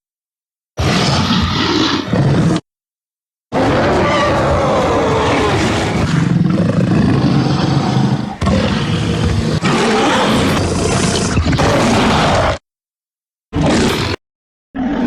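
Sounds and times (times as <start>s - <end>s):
monster growling roar: 0.8s - 2.6s, 3.5s - 12.6s, 13.5s - 14.2s, 14.8s - 15.0s.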